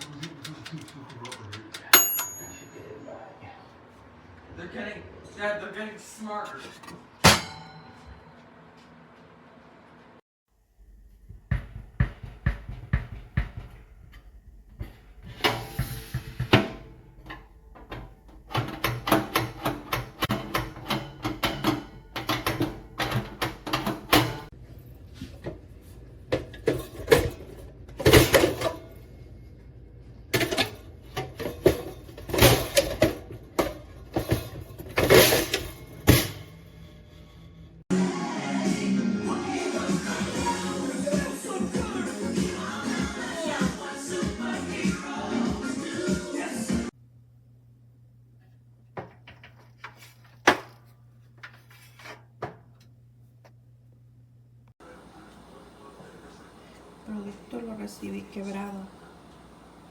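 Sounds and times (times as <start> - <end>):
drum-led music: 37.9 - 46.9.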